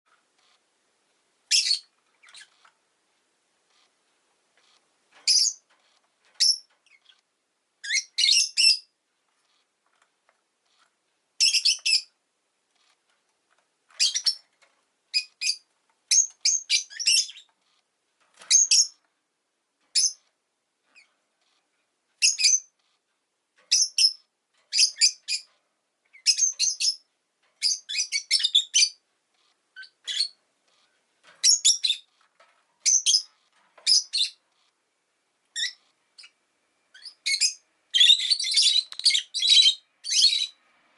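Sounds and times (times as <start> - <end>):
lovebird chirping: 1.5 - 2.7, 4.7 - 5.7, 6.4 - 7.2, 7.8 - 8.9, 11.4 - 12.2, 14.0 - 14.5, 15.1 - 17.5, 18.5 - 19.0, 19.9 - 20.3, 22.2 - 22.8, 23.7 - 25.5, 26.1 - 30.4, 31.4 - 32.1, 32.8 - 34.4, 35.5 - 40.6.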